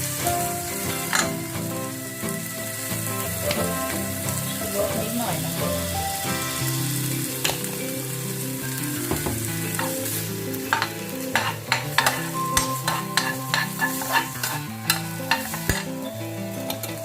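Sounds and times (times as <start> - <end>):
meat sizzling in a frying pan: 0.0 - 17.0
utensil clicking against pan: 10.7 - 16.0.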